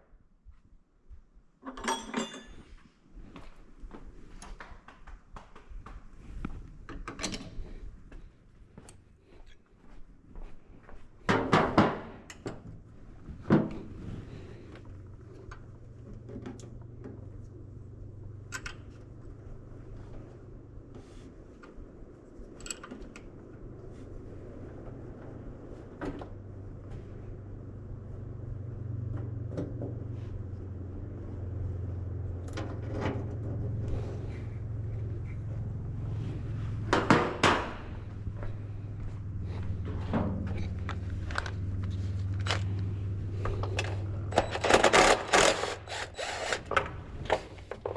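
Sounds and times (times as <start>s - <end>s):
hand tools and metal knocking: 1.6s - 2.8s, 43.4s - 47.9s
steady low hum: 23.4s - 47.9s.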